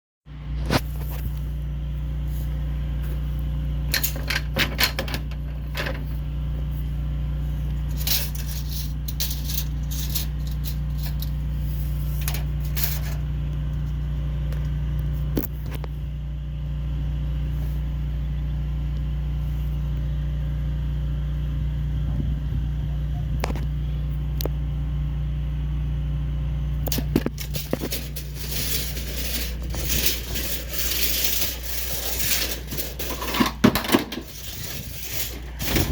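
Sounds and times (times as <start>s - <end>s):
steady low hum: 0.3s - 35.9s
metallic clinking and scraping: 3.9s - 6.2s, 7.7s - 13.3s, 26.9s - 35.9s.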